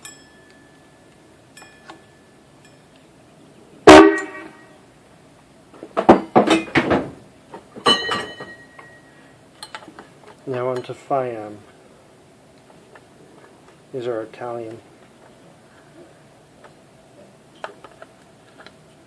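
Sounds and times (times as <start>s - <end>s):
air horn blast: 3.9s - 4.8s.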